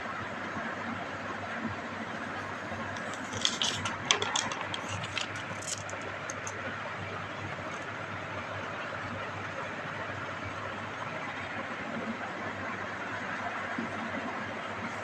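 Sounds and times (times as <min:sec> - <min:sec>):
light clicks and rustles: 0:02.9 - 0:06.6.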